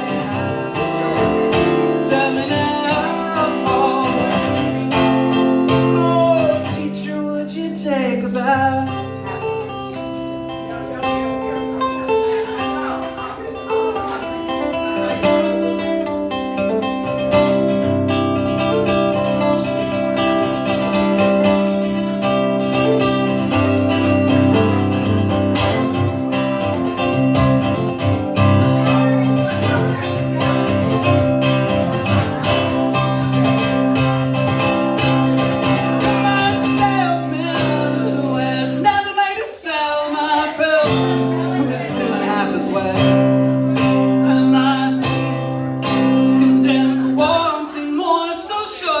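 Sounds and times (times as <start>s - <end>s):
band playing: 0.0s - 6.8s, 7.7s - 39.4s, 40.1s - 47.4s
strummed acoustic guitar: 0.0s - 49.0s.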